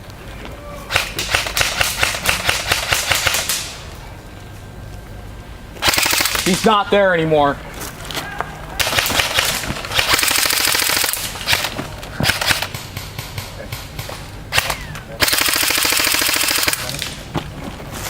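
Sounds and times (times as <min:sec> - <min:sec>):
airsoft gun firing bursts: 0:00.9 - 0:03.7, 0:05.8 - 0:06.7, 0:08.8 - 0:13.3, 0:14.5 - 0:17.0.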